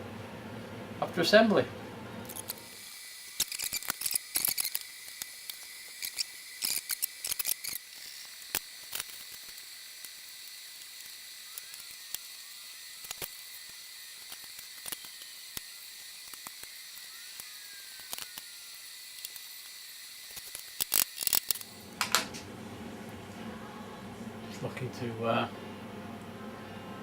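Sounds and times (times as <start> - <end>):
metal parts clicking: 3.3 - 21.6.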